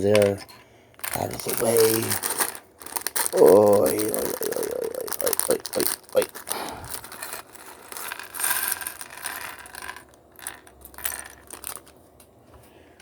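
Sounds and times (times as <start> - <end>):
plastic bricks clicking and rattling: 0.0 - 11.9.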